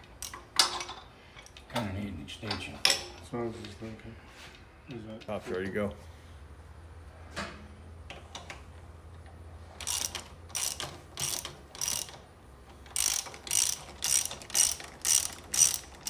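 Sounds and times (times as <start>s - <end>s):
socket ratchet pawl clicking: 9.8s - 12.2s, 12.8s - 16.0s.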